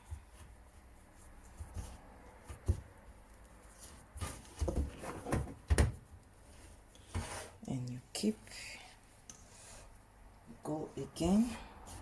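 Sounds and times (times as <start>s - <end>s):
hands patting and rustling flour: 0.0s - 4.9s.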